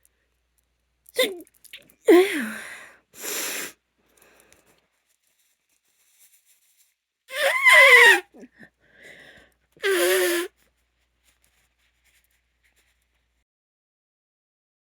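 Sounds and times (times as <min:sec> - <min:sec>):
woman sneezing: 0:01.2 - 0:01.4
faint breath: 0:08.6 - 0:10.6.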